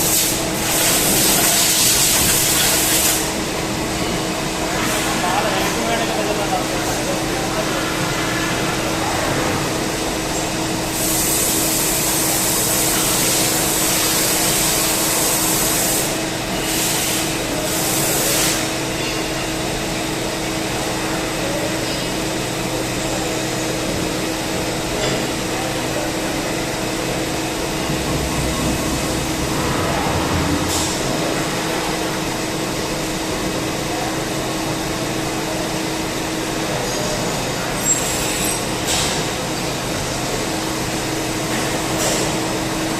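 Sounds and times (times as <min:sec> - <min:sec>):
lathe machine hum: 0:25.8 - 0:34.1.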